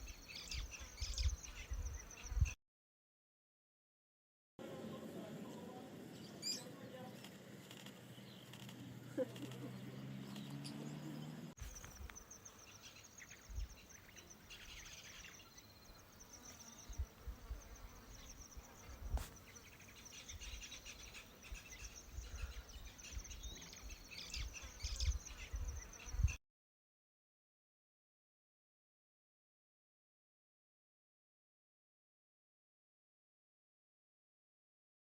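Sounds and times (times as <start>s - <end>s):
insects trilling: 11.6s - 26.1s
wind thumping on microphone: 18.9s - 19.4s.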